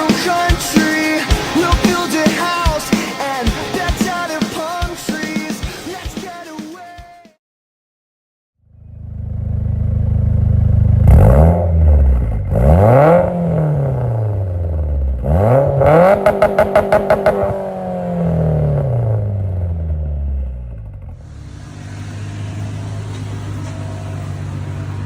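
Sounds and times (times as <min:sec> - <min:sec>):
car engine revving: 0:08.8 - 0:25.0
engine stuttering pulses: 0:08.8 - 0:25.0.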